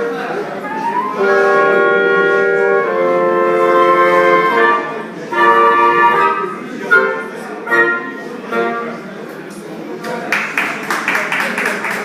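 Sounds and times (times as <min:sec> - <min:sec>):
melody of long held notes: 0:00.0 - 0:09.0.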